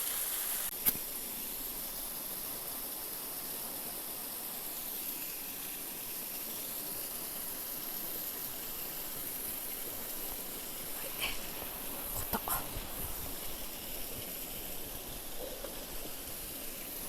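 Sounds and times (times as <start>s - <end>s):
flowing river water: 0.0s - 17.0s.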